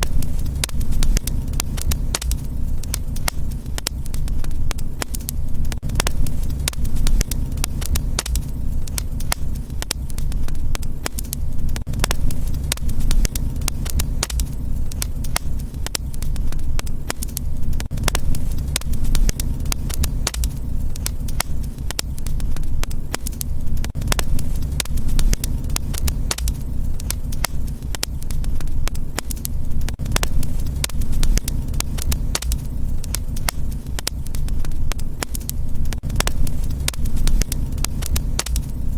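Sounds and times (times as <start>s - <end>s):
low rumble: 0.0s - 23.0s
wood fire crackling and popping: 0.0s - 38.9s.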